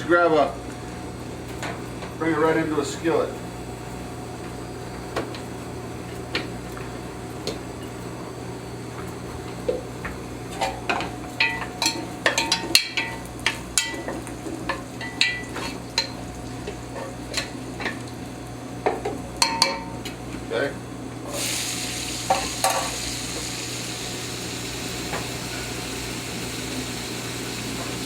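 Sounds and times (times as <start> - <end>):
faint sizzle: 21.3 - 28.0.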